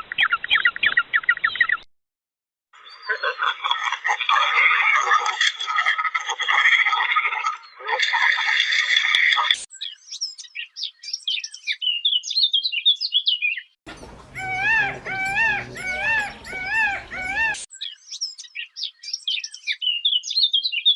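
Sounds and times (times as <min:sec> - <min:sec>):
songbirds chirping: 0:09.7 - 0:20.9
animal calling: 0:13.9 - 0:17.7.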